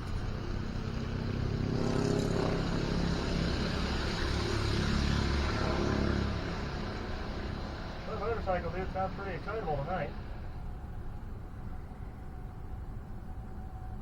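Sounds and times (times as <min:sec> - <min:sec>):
motorcycle engine revving: 0:00.0 - 0:08.0.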